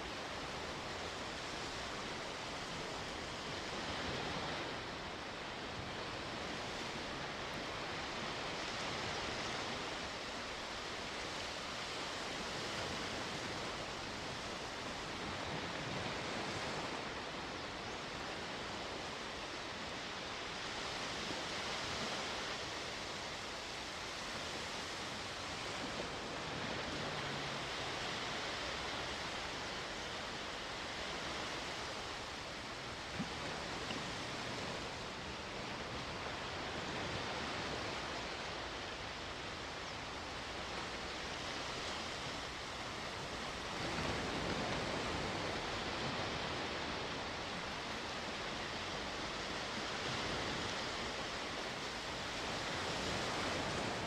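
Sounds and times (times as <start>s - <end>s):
sea waves washing ashore: 0.0s - 54.0s.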